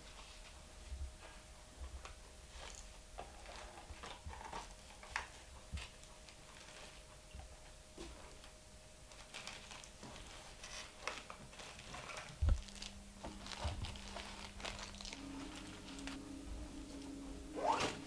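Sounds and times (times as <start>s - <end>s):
crinkling and rustling handling noise: 0.0s - 18.0s
steady low hum: 11.6s - 18.0s.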